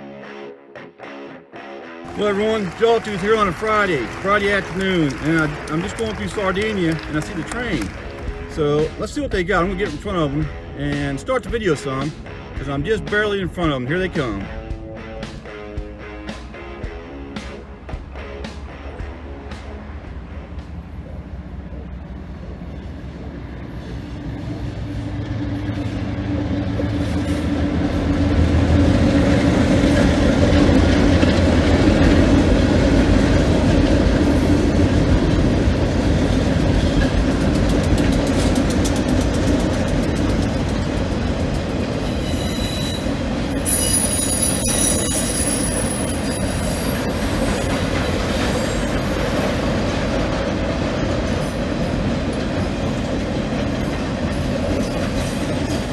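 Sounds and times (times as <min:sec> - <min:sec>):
diesel locomotive engine: 0:02.1 - 0:55.9
train wheels clattering over rail joints: 0:15.2 - 0:55.9
high-pitched wheel squeal: 0:42.0 - 0:49.7.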